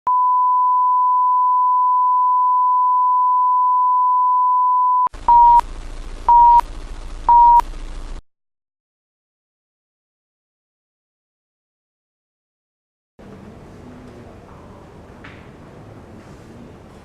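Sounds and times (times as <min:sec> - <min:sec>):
steady test tone: 0:00.1 - 0:08.2.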